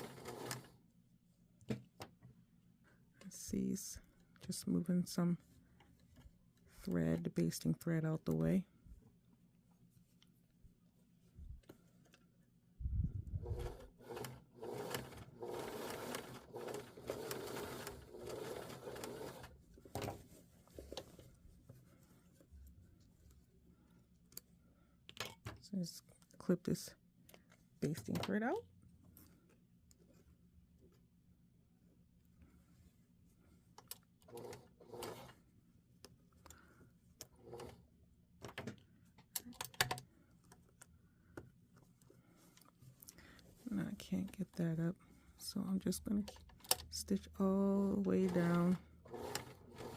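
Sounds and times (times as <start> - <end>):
sewing machine stitching: 0.0 - 0.8, 13.4 - 20.1, 34.3 - 35.4, 37.4 - 37.8, 48.0 - 49.9
soft fabric rustle: 9.6 - 12.4, 18.5 - 24.2.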